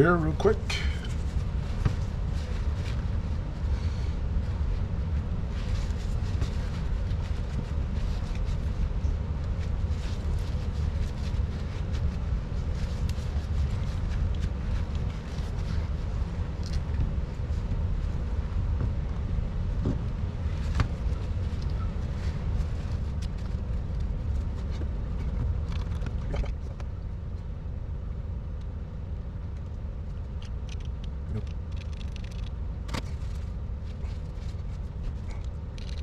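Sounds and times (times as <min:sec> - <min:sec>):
steady low rumble: 0:00.0 - 0:36.0.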